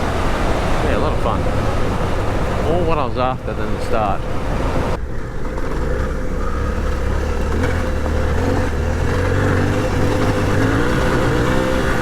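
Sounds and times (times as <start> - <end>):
motorcycle engine running: 4.4 - 12.0.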